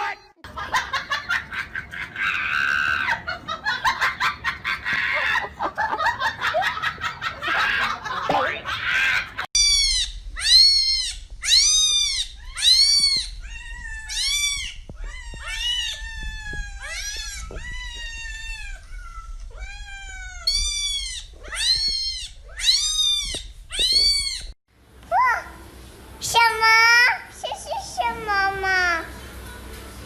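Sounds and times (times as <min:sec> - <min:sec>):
cat meowing: 0:09.6 - 0:24.5.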